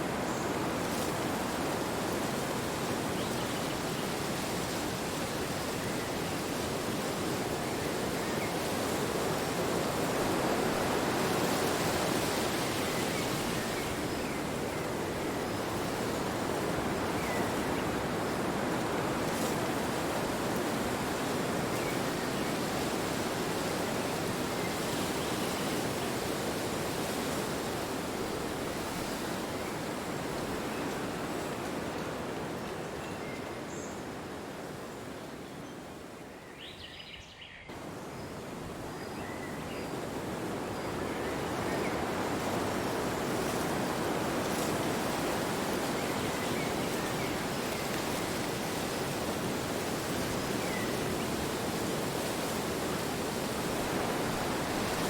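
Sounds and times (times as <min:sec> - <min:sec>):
wind blowing: 0:51.6 - 0:55.0.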